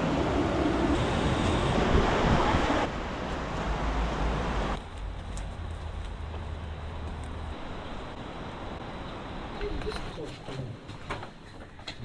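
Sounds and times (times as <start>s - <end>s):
wind rumbling on microphone: 0.0s - 9.4s.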